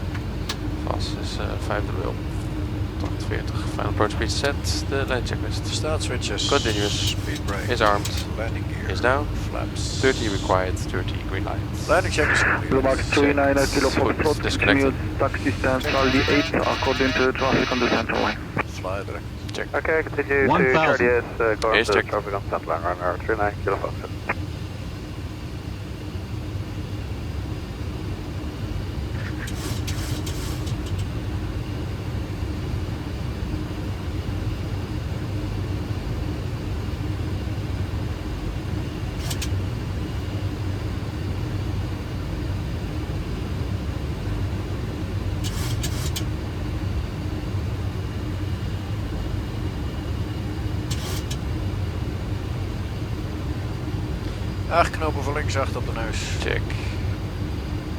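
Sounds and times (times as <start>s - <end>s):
airflow and engine hum: 0.0s - 57.9s
steady tone: 3.0s - 18.8s.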